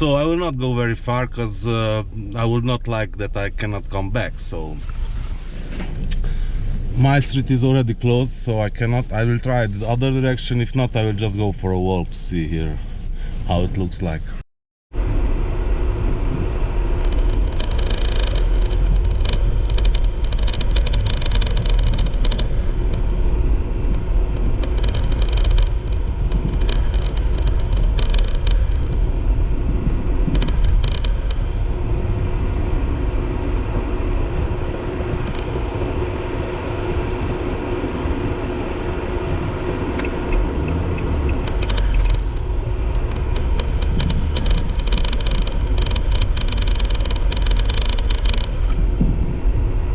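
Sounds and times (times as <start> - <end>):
strong wind buffeting microphone: 14.9 - 49.9.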